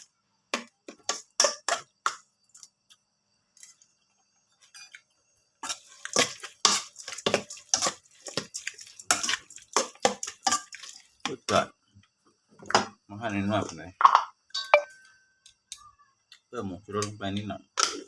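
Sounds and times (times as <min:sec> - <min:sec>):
utensils clinking against a bowl: 0:05.6 - 0:11.1.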